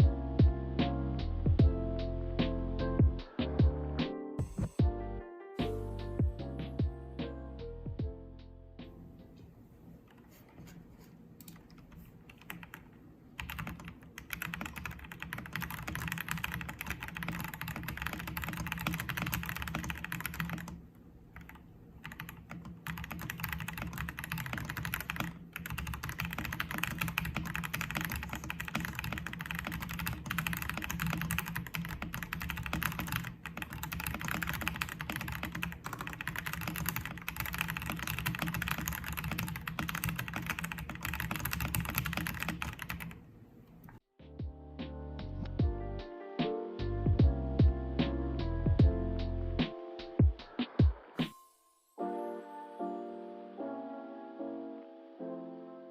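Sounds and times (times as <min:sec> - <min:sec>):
mechanical keyboard typing: 0:11.4 - 0:20.8, 0:21.4 - 0:43.2.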